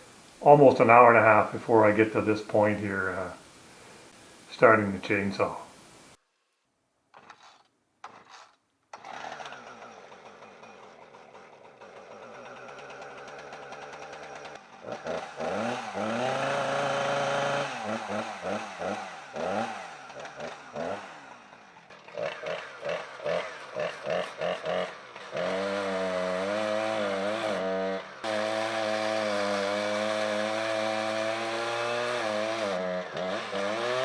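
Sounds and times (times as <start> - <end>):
two-stroke chainsaw revving: 8.9 - 34.0.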